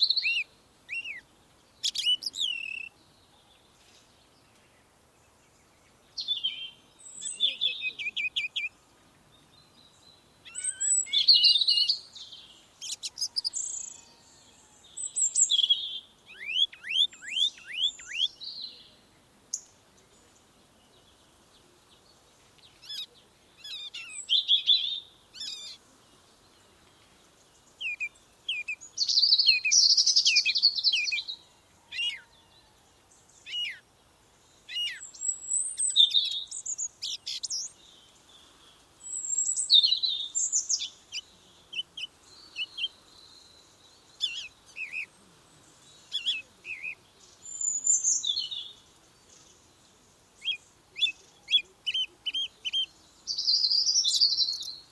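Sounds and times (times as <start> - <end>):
songbirds chirping and trilling: 0.0 - 54.9.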